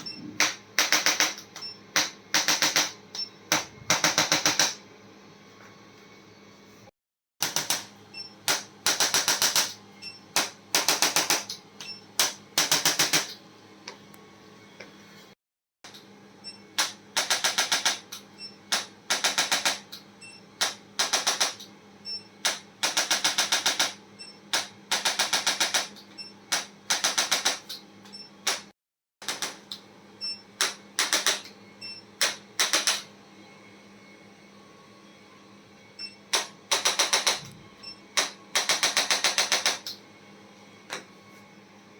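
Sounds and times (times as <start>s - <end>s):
rapid mechanical clicking bursts: 16.8s - 20.0s, 20.6s - 21.7s, 22.4s - 27.7s, 38.2s - 39.9s.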